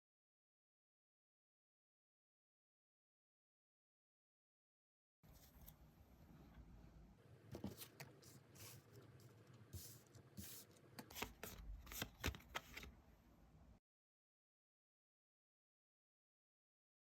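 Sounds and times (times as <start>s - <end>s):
cards being shuffled: 9.8s - 12.9s.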